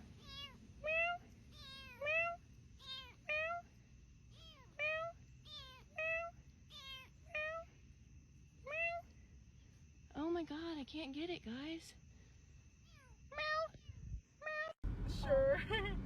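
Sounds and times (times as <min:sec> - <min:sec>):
cat meowing: 0:00.2 - 0:03.6, 0:04.3 - 0:07.7, 0:08.6 - 0:09.1, 0:12.8 - 0:14.8.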